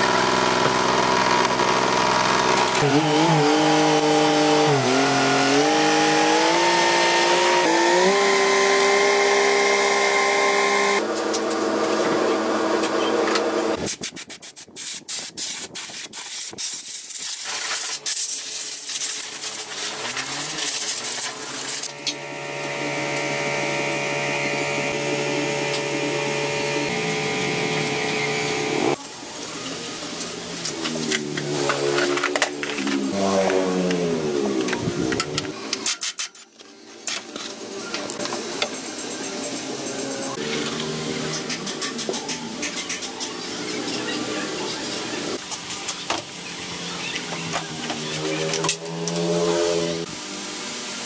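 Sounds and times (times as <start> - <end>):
power tool motor running: 0.0 - 13.8, 20.0 - 29.0, 47.7 - 50.2.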